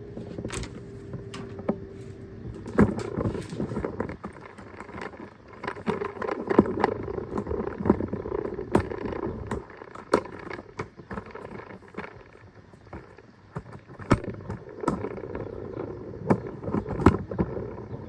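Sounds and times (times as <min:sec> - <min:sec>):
soft rustling: 0:00.0 - 0:06.6
objects handled and set down: 0:00.0 - 0:08.1.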